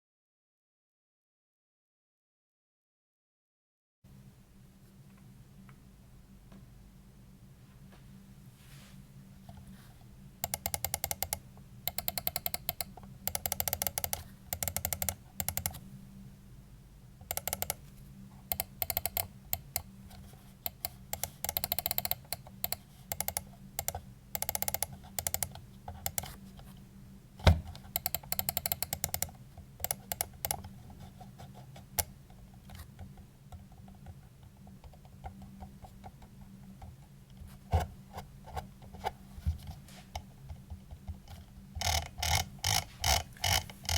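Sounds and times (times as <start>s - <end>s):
steady low hum: 4.1s - 43.9s
mouse clicking: 10.4s - 15.8s, 17.2s - 17.8s, 18.5s - 19.9s, 20.6s - 26.3s, 28.0s - 30.7s.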